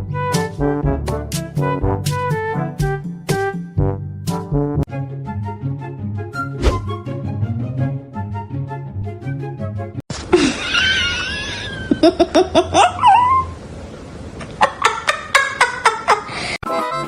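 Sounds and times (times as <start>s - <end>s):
laughter with high squeals: 10.3s - 13.6s, 14.5s - 16.3s.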